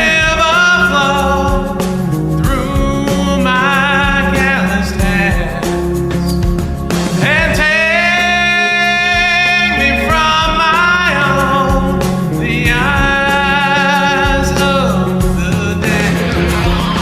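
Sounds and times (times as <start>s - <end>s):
man singing rock vocals: 0.0s - 17.0s
rock band playing: 0.0s - 17.0s.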